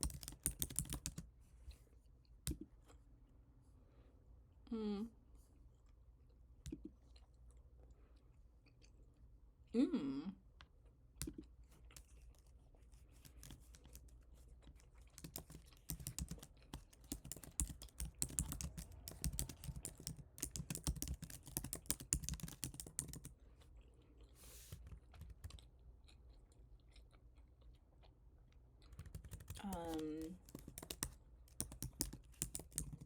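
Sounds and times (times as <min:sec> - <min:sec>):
computer keyboard typing: 0:00.0 - 0:01.3, 0:13.2 - 0:14.1, 0:15.1 - 0:23.4, 0:28.9 - 0:33.0.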